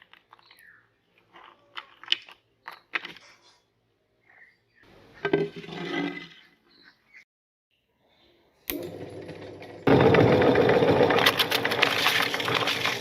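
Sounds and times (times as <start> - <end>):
meat grinder grinding cookies: 8.7 - 13.0.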